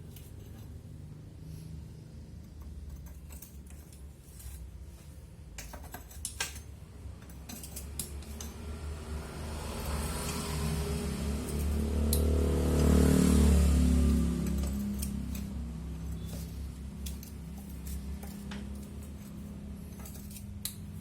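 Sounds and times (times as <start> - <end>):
metal clicks of hand tools: 5.5 - 8.7, 11.5 - 13.0, 14.4 - 21.0.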